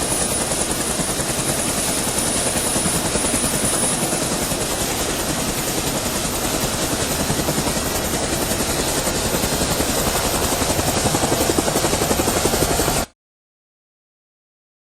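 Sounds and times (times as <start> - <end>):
helicopter engine and rotor: 0.0 - 13.2.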